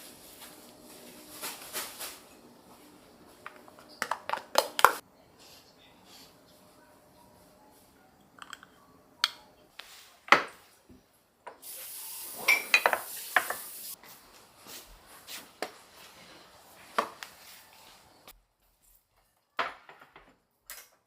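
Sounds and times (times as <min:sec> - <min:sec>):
dishes and utensils clinking: 0:08.2 - 0:09.5, 0:12.4 - 0:13.7
steady hiss: 0:11.6 - 0:14.0.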